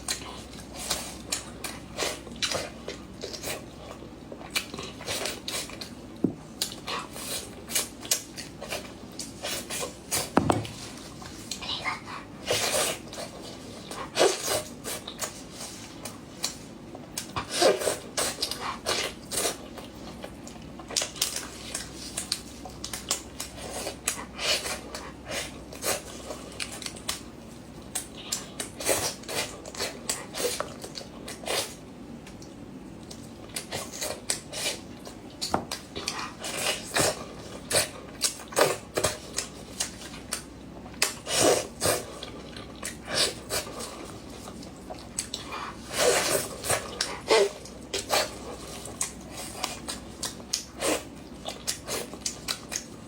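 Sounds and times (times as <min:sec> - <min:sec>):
chewing and mouth smacks: 0:00.0 - 0:11.8, 0:12.6 - 0:53.0.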